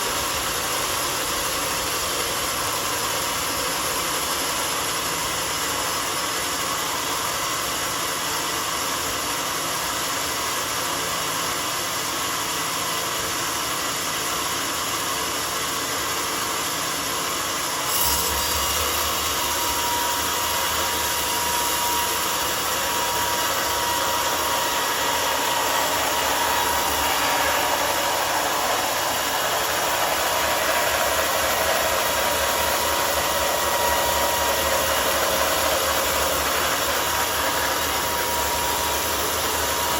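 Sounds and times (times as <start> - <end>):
sawmill cutting log: 16.6 - 39.9.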